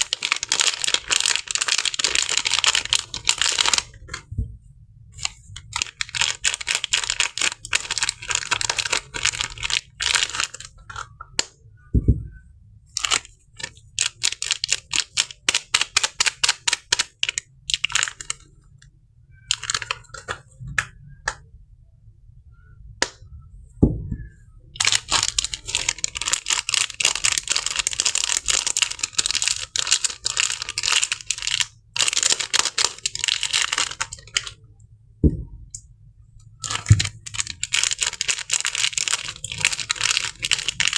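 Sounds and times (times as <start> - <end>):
paper wrapping crinkling and tearing: 0.0 - 4.2, 5.2 - 10.7, 19.5 - 20.1, 24.8 - 34.6, 36.6 - 40.9
soft thuds: 23.7 - 24.4, 35.2 - 35.7.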